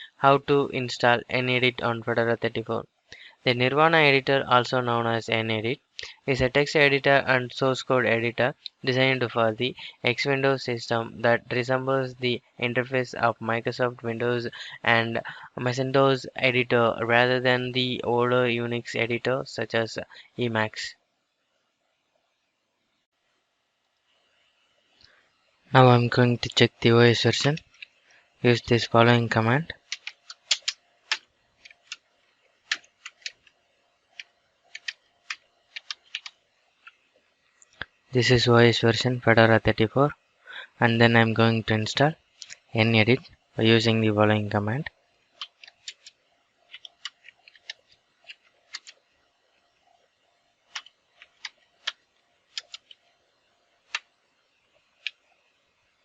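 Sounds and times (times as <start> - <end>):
keyboard keys clicking: 29.8 - 32.0, 32.6 - 33.4, 34.2 - 36.3, 45.4 - 46.1, 46.7 - 49.0, 50.7 - 53.0.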